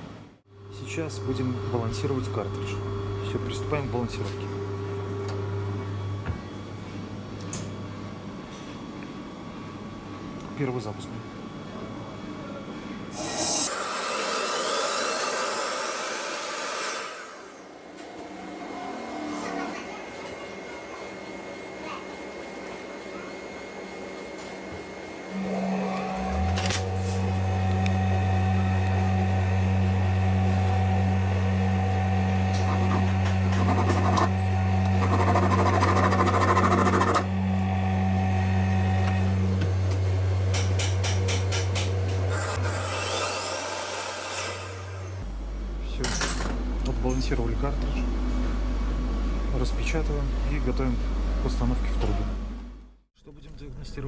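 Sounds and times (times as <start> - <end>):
loud rush of air: 13.2 - 17.2
balancing machine steady hum: 19.4 - 40.8.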